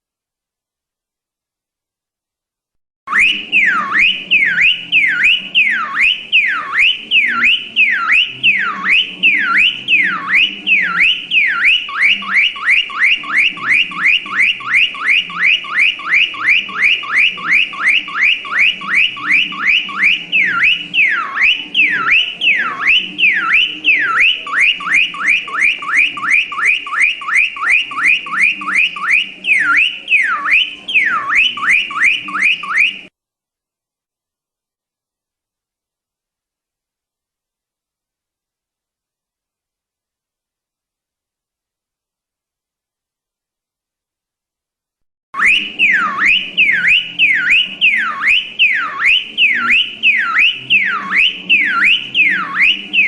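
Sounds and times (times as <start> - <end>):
car alarm siren wailing: 3.1 - 33.1, 45.4 - 53.0.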